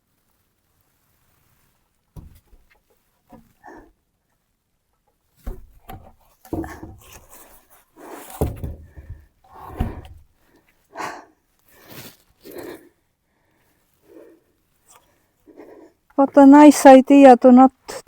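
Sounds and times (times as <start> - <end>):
heavy load thudding and knocking: 5.5 - 7.4, 8.3 - 10.3
strained panting breaths: 6.6 - 16.1.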